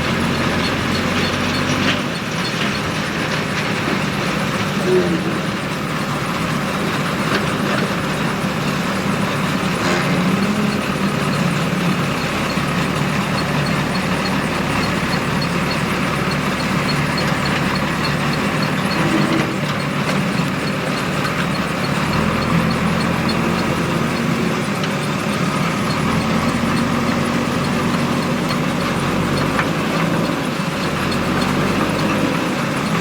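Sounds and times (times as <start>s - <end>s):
faint fast ticking: 0.0s - 33.0s
heavy diesel engine running: 0.0s - 33.0s.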